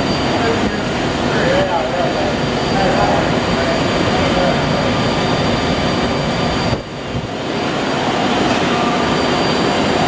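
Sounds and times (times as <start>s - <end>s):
industrial machine noise: 0.0s - 10.0s
thin high whine: 0.0s - 10.0s.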